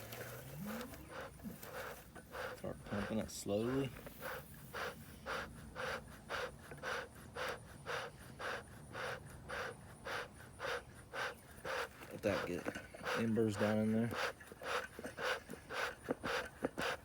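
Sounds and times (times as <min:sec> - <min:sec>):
bellows puffing air: 0:00.0 - 0:17.0.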